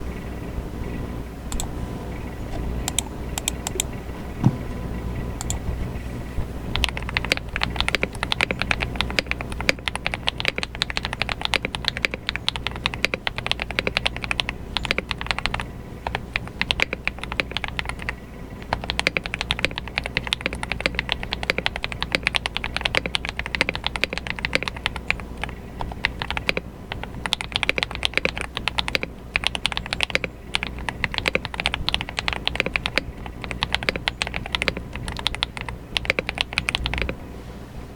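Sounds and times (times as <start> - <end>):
typing on mechanical keyboard: 2.9 - 3.9, 5.4 - 5.6, 6.7 - 37.2
heavy thump: 4.4 - 4.8.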